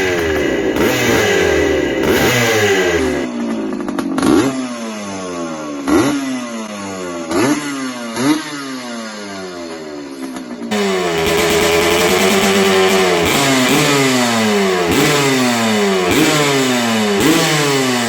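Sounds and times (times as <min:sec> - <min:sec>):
motorcycle engine revving: 0:00.0 - 0:18.0.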